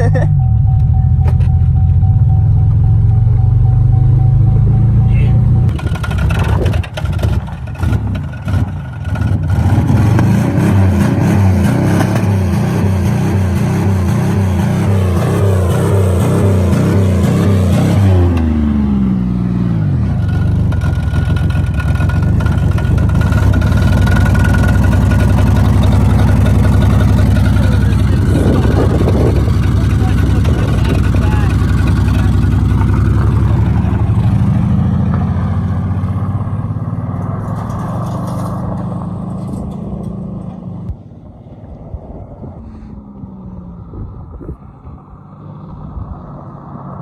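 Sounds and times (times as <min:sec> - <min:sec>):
car engine revving: 0:00.0 - 0:41.3
sharp engine knocks: 0:05.7 - 0:09.5.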